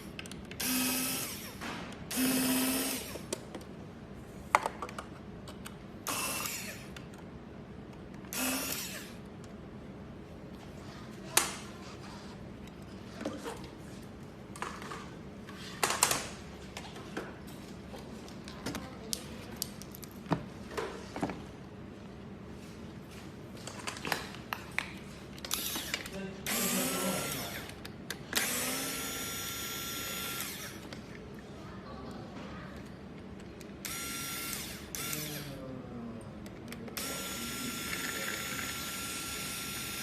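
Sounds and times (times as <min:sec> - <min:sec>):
power drill whirring: 0:00.6 - 0:03.2, 0:06.0 - 0:06.8, 0:08.3 - 0:09.2, 0:25.5 - 0:27.7, 0:28.4 - 0:30.8, 0:33.8 - 0:35.5, 0:37.0 - 0:40.0.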